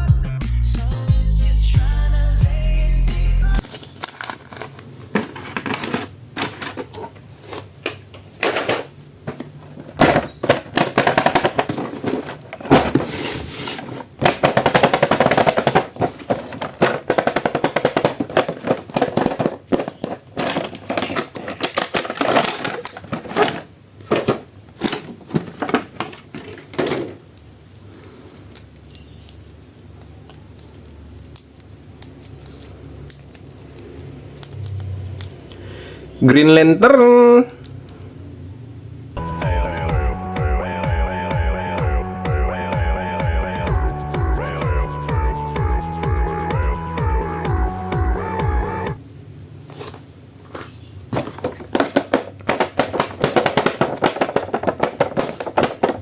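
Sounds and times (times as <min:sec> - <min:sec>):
plastic packaging crinkling: 0:03.6 - 0:27.2, 0:49.7 - 0:56.0.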